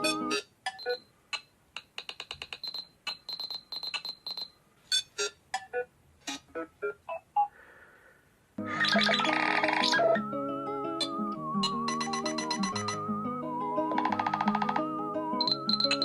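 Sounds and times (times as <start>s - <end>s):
electronic ringtone bleeps: 0.0s - 1.0s, 8.8s - 16.0s.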